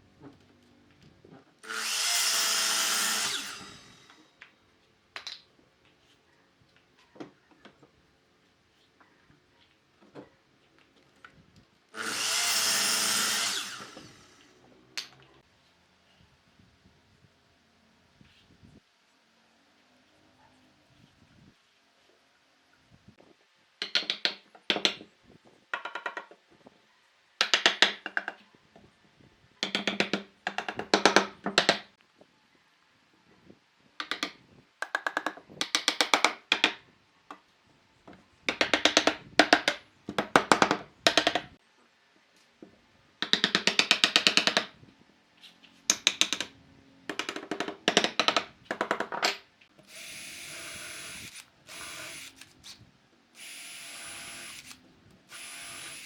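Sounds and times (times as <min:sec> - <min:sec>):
power tool hammering into wood: 0:01.6 - 0:04.1, 0:53.4 - 0:56.0
drill whine: 0:01.6 - 0:04.2, 0:12.0 - 0:14.4, 0:49.8 - 0:52.8, 0:53.4 - 0:56.0.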